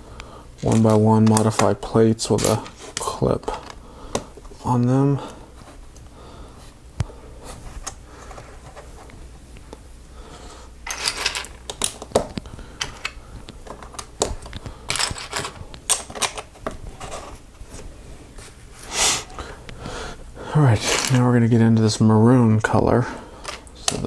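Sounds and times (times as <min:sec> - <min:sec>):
plastic bricks clicking and rattling: 0:10.9 - 0:17.2.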